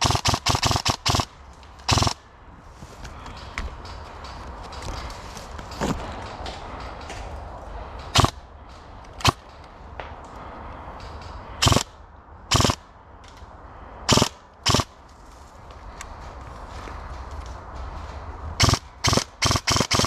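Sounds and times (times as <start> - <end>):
airsoft gun shots: 0.0 - 1.3, 1.9 - 2.2, 8.1 - 8.4, 11.6 - 11.9, 12.5 - 12.8, 14.1 - 14.9, 18.6 - 20.0.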